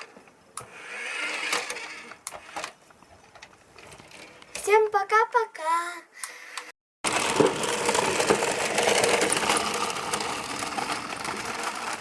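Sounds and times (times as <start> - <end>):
toy car electric motor whirring: 0.6 - 2.7, 7.1 - 12.0.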